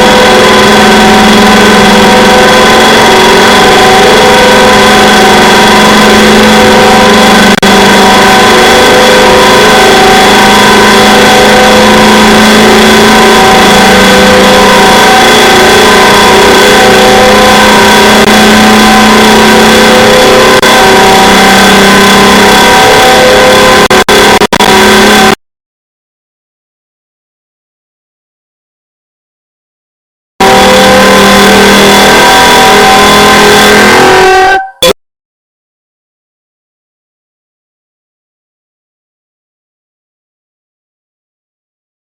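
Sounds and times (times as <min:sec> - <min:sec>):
harsh distorted electronic drone: 0:00.0 - 0:25.4, 0:30.4 - 0:35.0.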